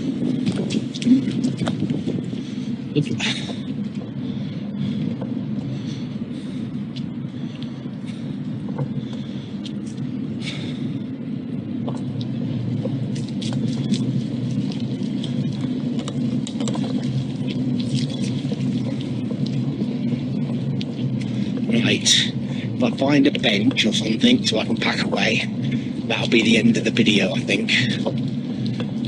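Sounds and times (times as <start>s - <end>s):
bicycle tyres rumbling: 0.0s - 29.0s
small clicks and ticks: 11.8s - 21.8s, 27.7s - 29.0s.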